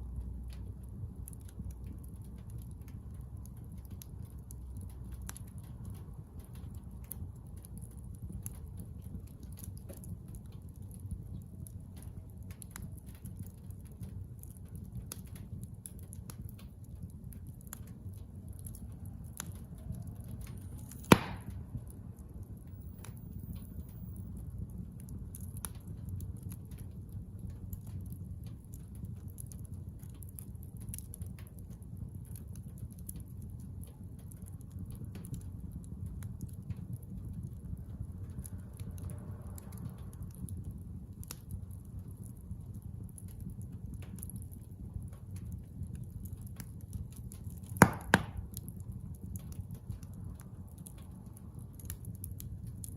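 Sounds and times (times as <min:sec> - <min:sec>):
bonfire crackling: 0:00.0 - 0:52.9
low fire rumble: 0:00.0 - 0:52.9
fire popping sharply: 0:17.8 - 0:24.4, 0:47.5 - 0:48.9.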